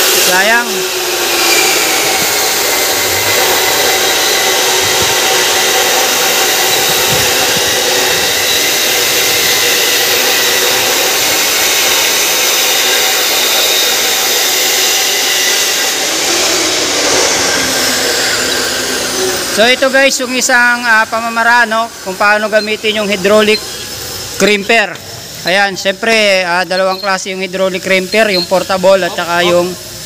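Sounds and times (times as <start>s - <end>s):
machine rushing with whining tones: 0.0s - 30.0s.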